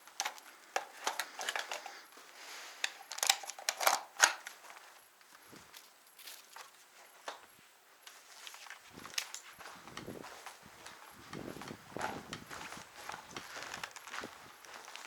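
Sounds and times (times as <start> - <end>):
footsteps crunching on gritty ground: 8.1 - 15.0.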